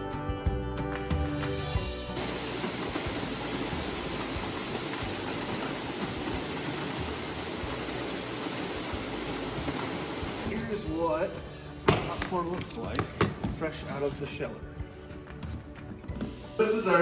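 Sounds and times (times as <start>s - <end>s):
popcorn sheller machine running: 2.2s - 10.8s.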